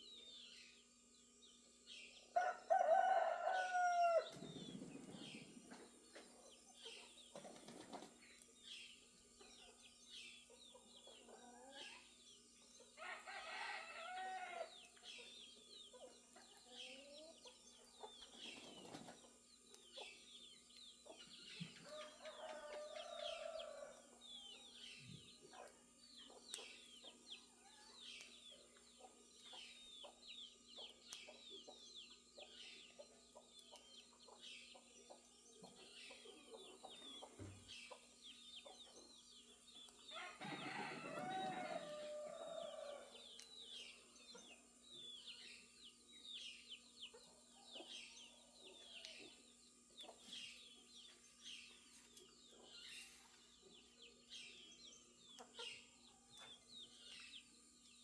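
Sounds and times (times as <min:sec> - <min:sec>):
small birds chirping: 0:00.0 - 0:58.0
faint rooster crowing: 0:02.4 - 0:04.5, 0:13.0 - 0:15.0, 0:21.8 - 0:24.7, 0:40.1 - 0:43.4.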